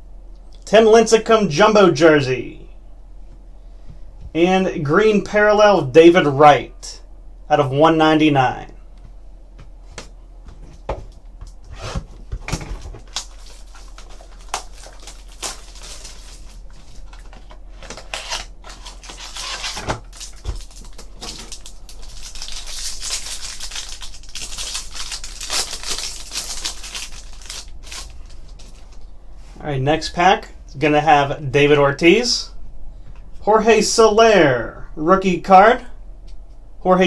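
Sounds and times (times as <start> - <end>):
packaging rustling: 10.6 - 29.1.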